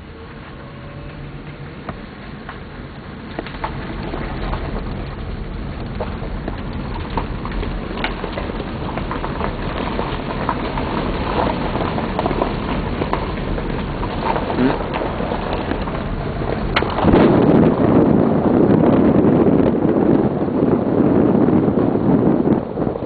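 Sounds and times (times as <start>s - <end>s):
tyre and road rumble: 0.0s - 23.0s
small ticks and crackles: 1.1s - 17.8s.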